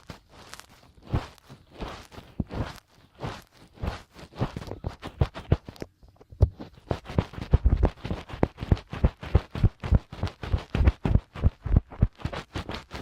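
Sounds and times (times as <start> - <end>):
fingertips scratching microphone ear: 0.0 - 13.0.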